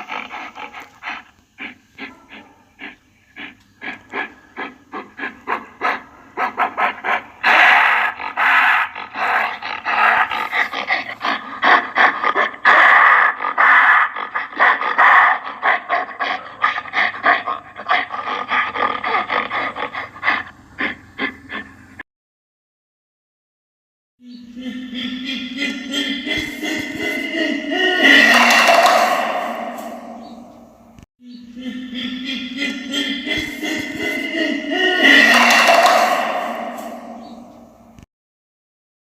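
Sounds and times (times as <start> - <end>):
gorilla grunts and huffs: 0.0 - 22.0, 24.3 - 38.0
gorilla rough calls: 0.0 - 22.0, 24.4 - 38.0.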